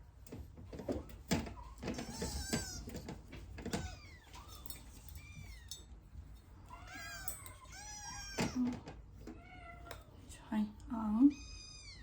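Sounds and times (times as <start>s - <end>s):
kittens mewing: 1.9s - 3.0s, 6.7s - 10.0s.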